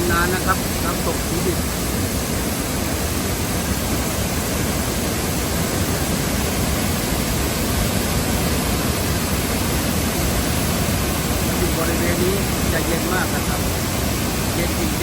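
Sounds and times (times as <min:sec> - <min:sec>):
waterfall rushing: 0:00.0 - 0:15.0.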